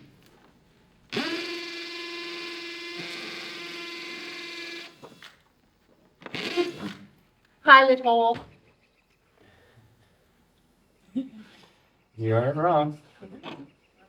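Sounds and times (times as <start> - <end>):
power drill whining: 1.1 - 5.5, 6.2 - 7.2.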